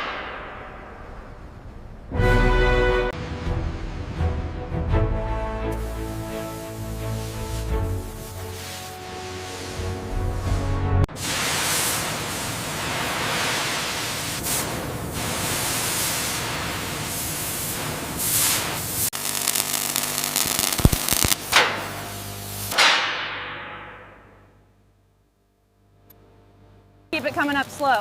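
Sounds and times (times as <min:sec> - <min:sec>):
sharp cracks: 0:00.0 - 0:02.1, 0:19.2 - 0:21.9, 0:22.7 - 0:23.8
hissing and crackling noise: 0:11.2 - 0:22.8.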